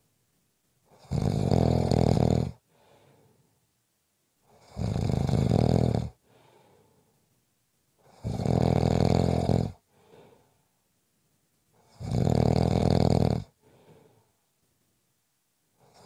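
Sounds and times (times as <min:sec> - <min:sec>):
person snoring: 0:00.9 - 0:02.6, 0:04.5 - 0:06.2, 0:08.0 - 0:09.8, 0:11.8 - 0:14.0
faint breath sound: 0:02.6 - 0:03.8, 0:06.1 - 0:07.4, 0:09.7 - 0:10.9, 0:13.5 - 0:14.6.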